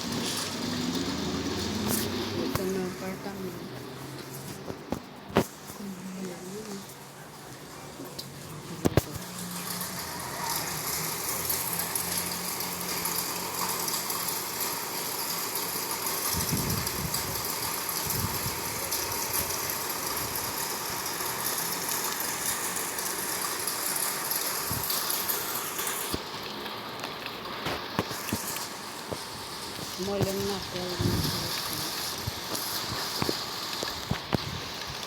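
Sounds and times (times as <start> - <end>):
heavy rain: 0.0 - 35.0
wind gusts on microphone: 16.3 - 18.8, 29.4 - 35.0.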